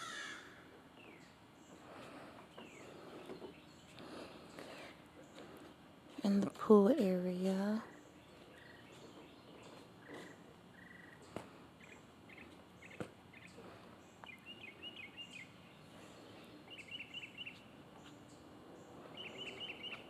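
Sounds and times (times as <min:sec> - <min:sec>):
faint songbird chirping: 0:00.0 - 0:20.0.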